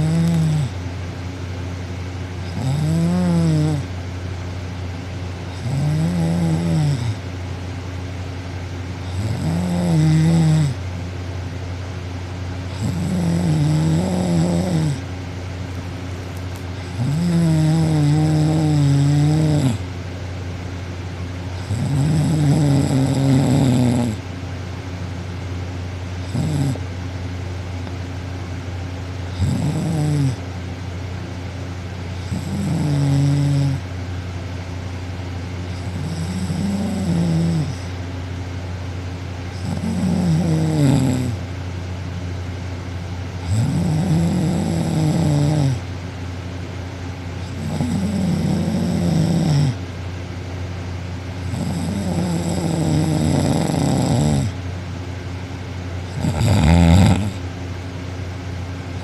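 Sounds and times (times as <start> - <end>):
woman snoring: 0.0 - 0.8, 2.4 - 3.9, 5.5 - 7.2, 9.0 - 10.8, 12.7 - 15.0, 16.8 - 19.8, 21.6 - 24.2, 26.2 - 26.8, 29.3 - 30.4, 32.2 - 33.8, 35.8 - 38.0, 39.6 - 41.4, 43.4 - 45.8, 47.4 - 49.8, 51.4 - 54.6, 56.1 - 57.4
steady low hum: 0.0 - 59.0.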